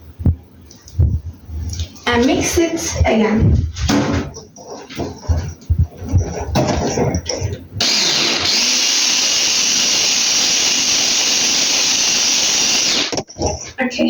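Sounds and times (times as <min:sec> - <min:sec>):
clattering: 0:03.8 - 0:07.7
electric hand mixer running: 0:07.8 - 0:13.2.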